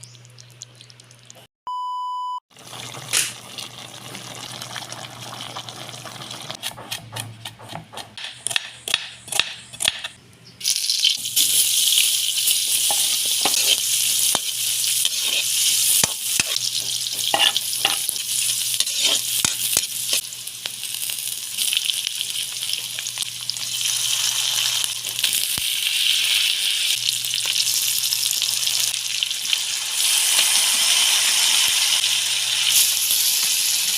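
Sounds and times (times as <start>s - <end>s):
short electronic beep: 1.7s - 2.4s
food sizzling in a pan: 10.7s - 33.9s.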